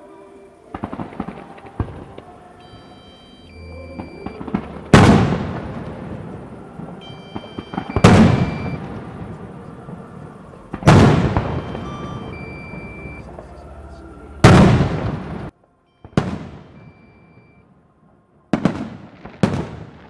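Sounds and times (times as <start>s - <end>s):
firework bursts: 0.7s - 17.6s, 18.5s - 20.0s
echoing rumble: 3.4s - 17.2s.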